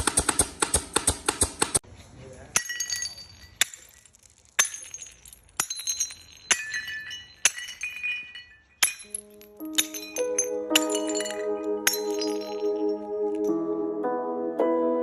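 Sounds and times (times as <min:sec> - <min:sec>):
sharp glassy clinks: 0:02.5 - 0:13.5
steady musical tones: 0:09.2 - 0:15.0.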